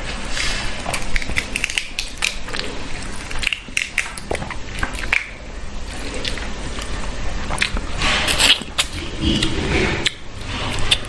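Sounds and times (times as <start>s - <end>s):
prawn shell cracking: 0.4s - 5.4s.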